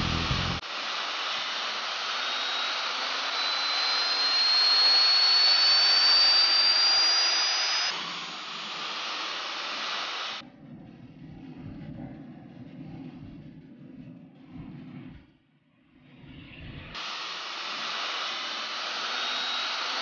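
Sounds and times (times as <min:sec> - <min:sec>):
low rumble: 0:00.0 - 0:00.6
high engine whine: 0:00.0 - 0:10.4
jet engine rushing: 0:00.0 - 0:10.4.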